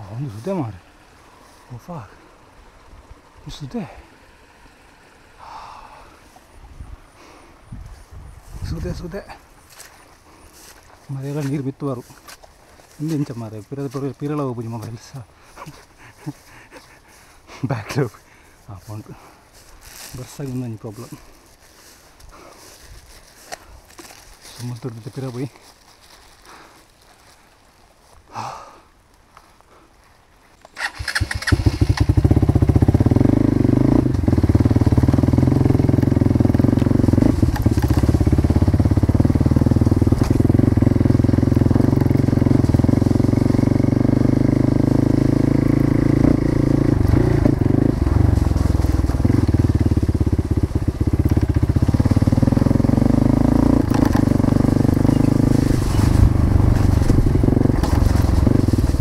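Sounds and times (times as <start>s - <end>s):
motorcycle engine starting and running: 30.8s - 59.0s.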